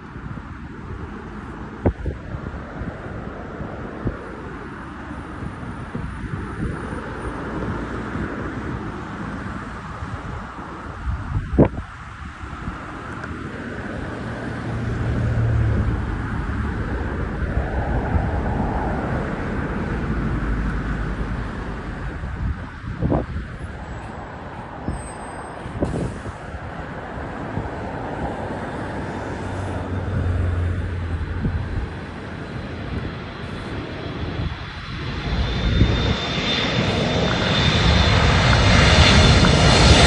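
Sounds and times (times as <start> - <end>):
jet engines with rising whine: 0.0 - 40.0
wind gusts buffeting microphone: 0.0 - 40.0.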